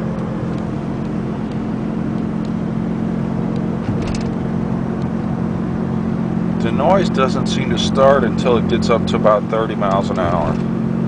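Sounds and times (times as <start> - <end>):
car engine and road noise: 0.0 - 11.0
short rattle: 3.8 - 4.4.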